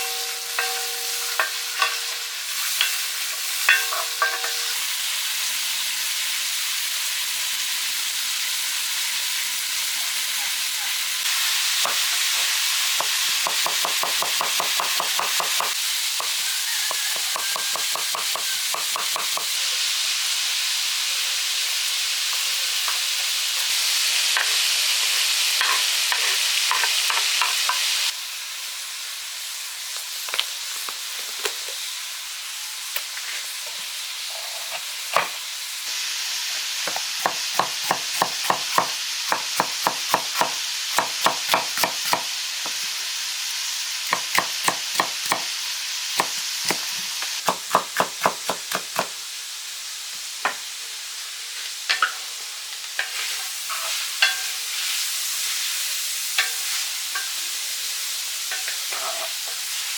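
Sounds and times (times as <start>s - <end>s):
utensil clinking against pot: 0.0s - 2.2s, 3.7s - 4.8s.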